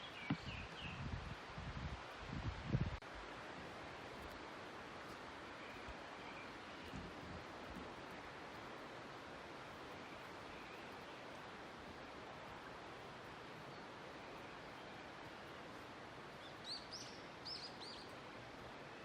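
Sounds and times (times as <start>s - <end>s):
forest ambience hiss: 0.0s - 19.0s
small bird chirping: 9.6s - 18.7s.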